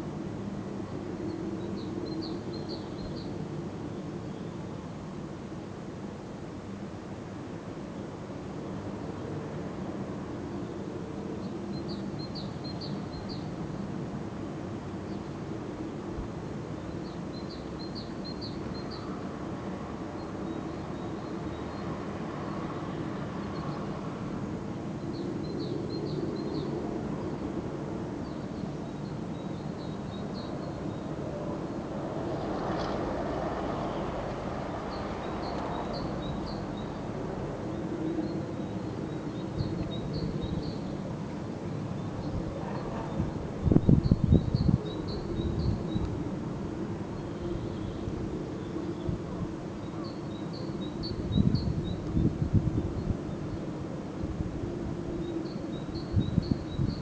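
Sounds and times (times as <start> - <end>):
songbird high chirps: 1.2 - 3.4, 16.8 - 19.2, 28.2 - 31.1, 34.9 - 37.1, 37.8 - 46.2, 49.8 - 53.6.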